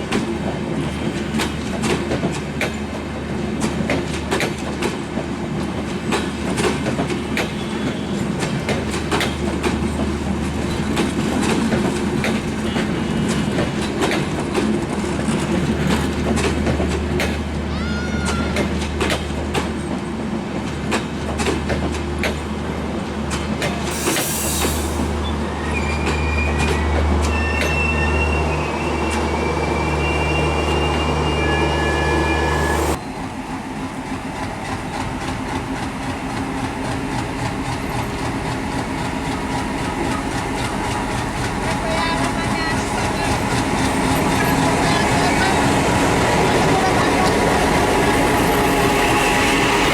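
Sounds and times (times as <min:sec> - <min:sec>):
train wheels clattering over rails: 0:00.0 - 0:31.2, 0:32.9 - 0:49.9
wheels squealing: 0:24.0 - 0:33.0.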